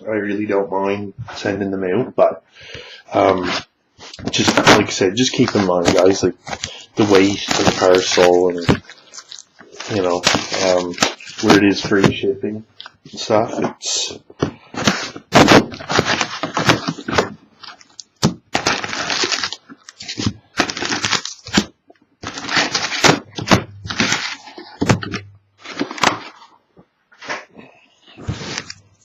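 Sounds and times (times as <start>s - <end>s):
wrappers tearing and crinkling: 4.4s - 11.8s, 14.8s - 24.8s.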